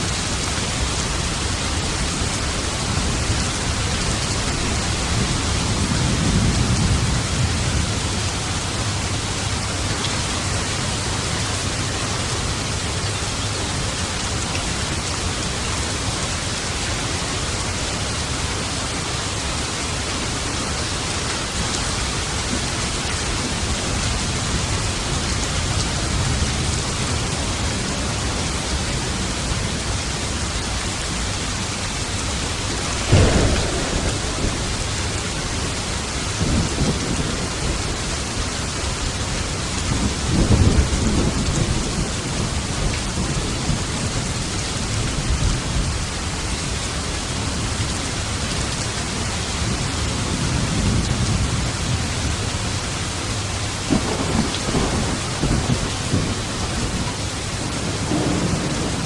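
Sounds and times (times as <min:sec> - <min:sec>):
heavy rain: 0:00.0 - 0:59.0
thunder rumbling: 0:31.5 - 0:46.1, 0:53.8 - 0:59.0
sharp thunderclap: 0:32.4 - 0:38.4, 0:53.9 - 0:59.0.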